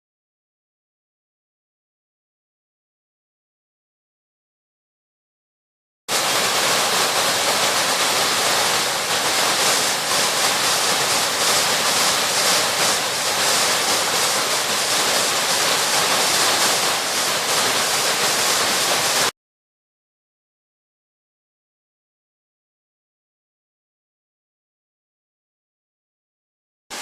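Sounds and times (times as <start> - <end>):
water rushing over waterfall: 6.1 - 19.3.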